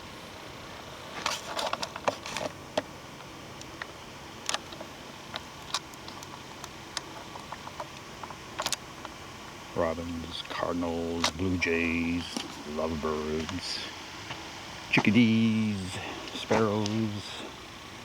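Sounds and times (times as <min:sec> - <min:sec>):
steady background hiss: 0:00.0 - 0:18.0
light clicks and crackles: 0:01.2 - 0:09.2.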